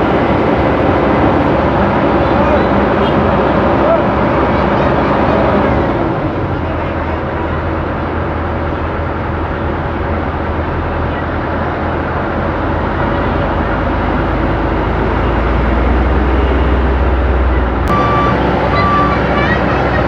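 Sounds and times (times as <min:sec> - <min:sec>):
diesel engine drone: 0:00.0 - 0:20.0.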